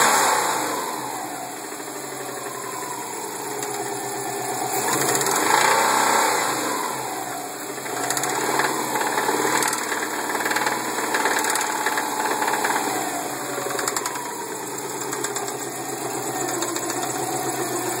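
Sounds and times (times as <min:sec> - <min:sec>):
car engine idling and revving: 0:00.0 - 0:18.0
engine bearing knocking: 0:14.9 - 0:18.0.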